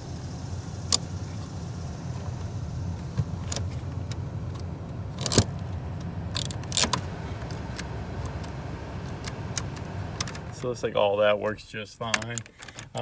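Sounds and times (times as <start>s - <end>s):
heater blower fan humming: 0.0s - 13.0s
control switch clicks: 3.5s - 10.8s.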